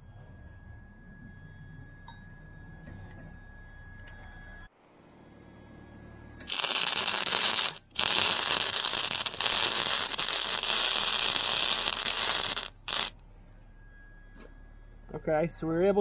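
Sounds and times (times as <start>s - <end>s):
welder arc crackling: 6.5s - 13.1s.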